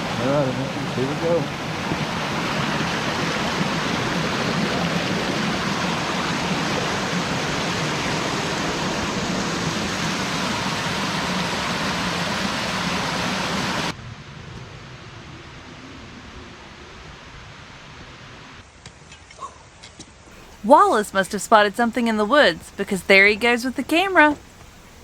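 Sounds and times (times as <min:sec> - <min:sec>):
stream rushing over rocks: 0:00.0 - 0:13.9.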